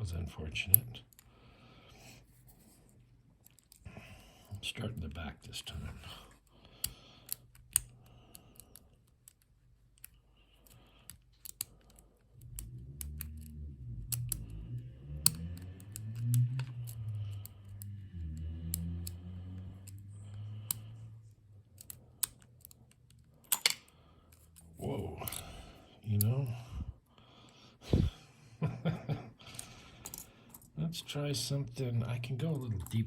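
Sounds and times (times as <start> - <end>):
lock pick clicking in padlock: 6.8 - 14.6, 15.2 - 17.9, 21.7 - 24.6
low wavering hum: 12.3 - 22.2, 24.0 - 27.1, 27.8 - 28.2.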